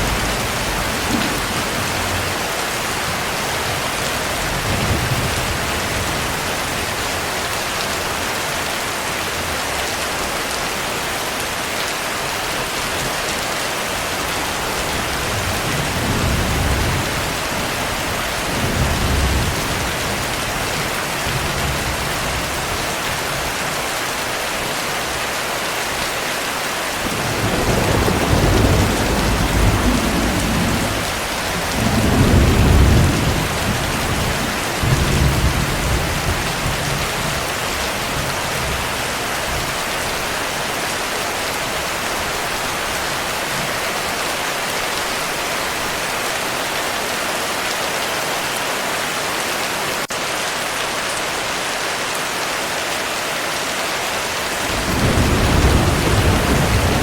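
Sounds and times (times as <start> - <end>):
thunder rumbling: 0.0 - 7.0, 14.0 - 22.5, 27.0 - 39.7, 54.5 - 57.0
heavy rain: 0.0 - 57.0.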